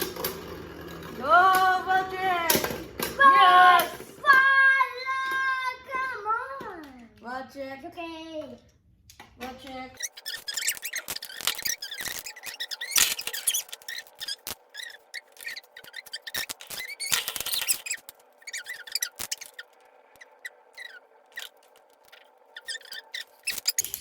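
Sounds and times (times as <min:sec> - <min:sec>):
spinning tops clicking and scraping: 0:09.5 - 0:24.0.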